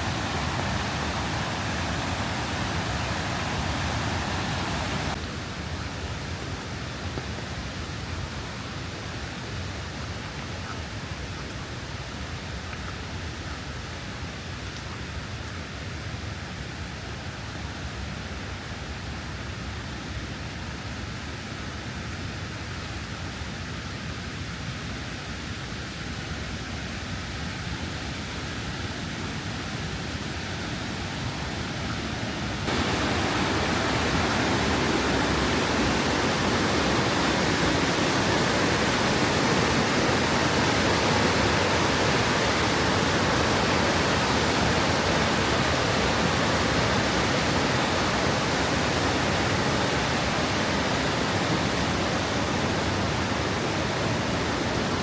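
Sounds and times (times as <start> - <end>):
waterfall rushing: 0.0 - 12.4, 29.9 - 55.0
rain: 0.0 - 55.0.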